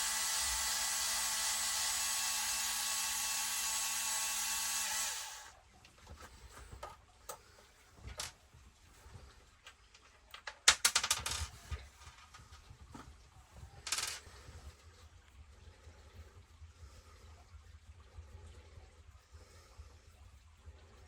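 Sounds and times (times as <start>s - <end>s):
screws and tools clattering: 10.4s - 12.3s, 13.8s - 14.3s.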